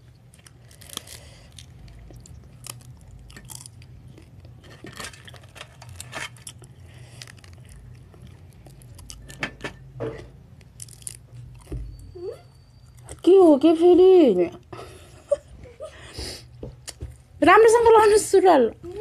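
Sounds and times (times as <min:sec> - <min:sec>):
person chewing and smacking: 0:00.0 - 0:09.4, 0:10.6 - 0:12.1.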